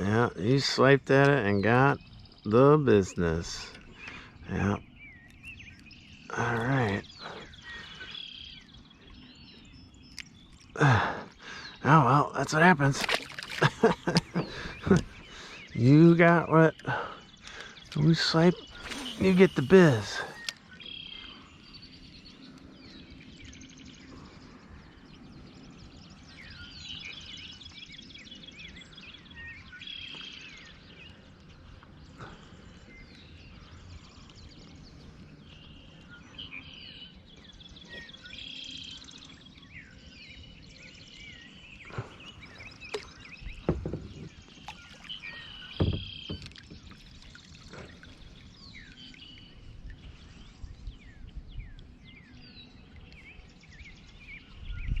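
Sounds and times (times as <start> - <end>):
birds singing: 0.0 - 55.0
sharp knocks: 43.6 - 44.4, 45.8 - 46.8.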